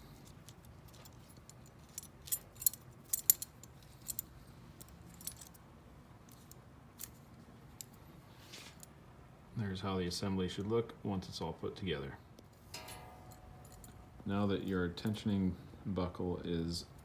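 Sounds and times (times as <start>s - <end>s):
metal strap hardware clinking: 0.0s - 5.6s, 12.6s - 14.8s.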